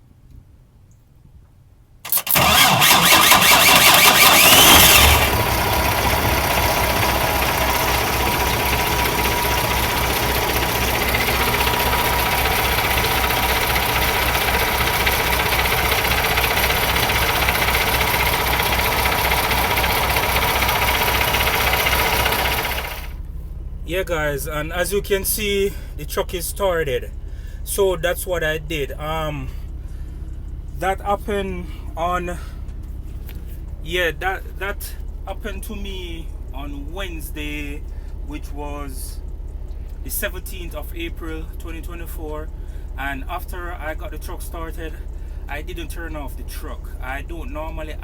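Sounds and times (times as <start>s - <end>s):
starter motor cranking engine: 2.1s - 23.2s
diesel engine idling: 2.1s - 48.0s.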